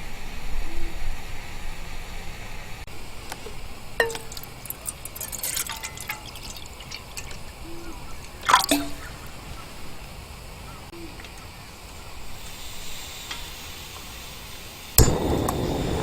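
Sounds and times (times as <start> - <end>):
faint liquid sounds: 2.9 - 15.0
light ringing clinks and knocks: 3.3 - 7.4.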